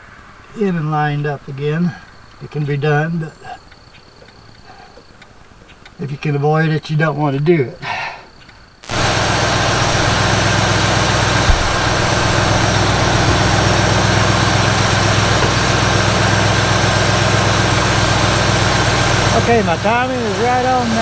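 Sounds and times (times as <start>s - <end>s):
car engine idling: 8.8s - 21.0s
short thump: 11.4s - 12.0s.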